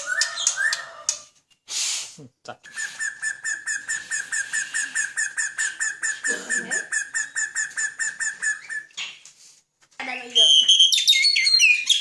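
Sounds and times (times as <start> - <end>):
bird chirping rapidly: 2.7 - 9.2, 10.0 - 12.0.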